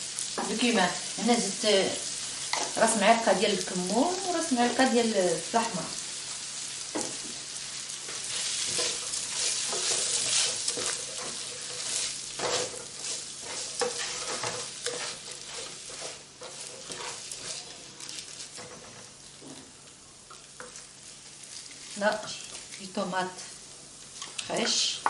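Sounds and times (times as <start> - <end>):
vegetables sizzling in oil: 0.0 - 25.0
utensil scraping and tapping pan: 8.7 - 17.6.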